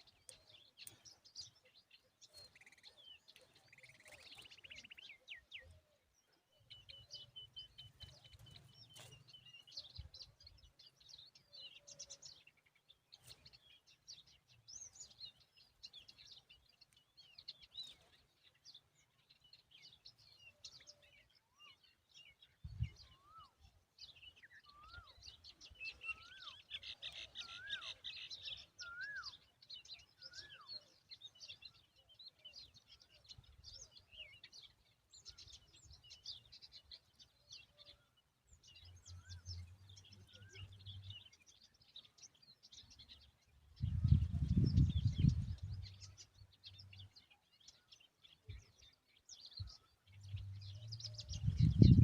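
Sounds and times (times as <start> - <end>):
small birds chirping: 0.0 - 52.0
whistled bird notes: 24.2 - 31.6.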